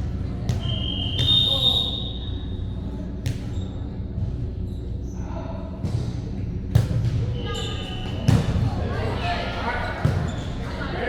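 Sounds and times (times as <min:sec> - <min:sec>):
low murmur of voices: 0:00.0 - 0:11.0
shoe squeaks: 0:07.4 - 0:08.4.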